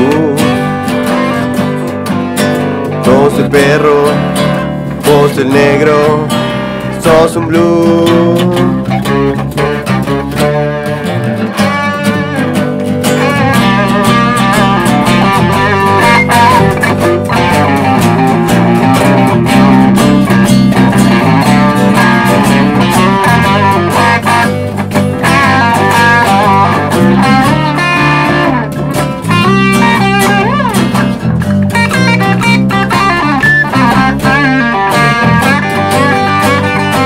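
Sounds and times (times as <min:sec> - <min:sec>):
blues band playing: 0:00.0 - 0:37.0
electric guitar lead with bent notes: 0:00.0 - 0:37.0.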